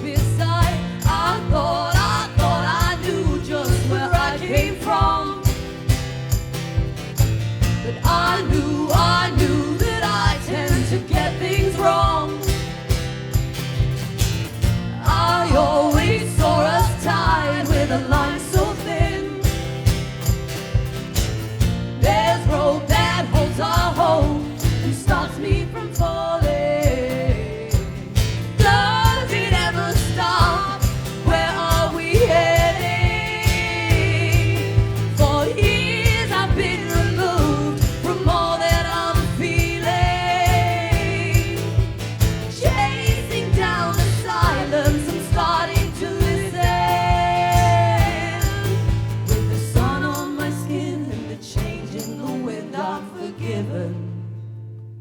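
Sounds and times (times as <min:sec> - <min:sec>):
strummed guitar rhythm: 0:00.0 - 0:52.9
person singing: 0:22.0 - 0:41.8, 0:42.6 - 0:54.2.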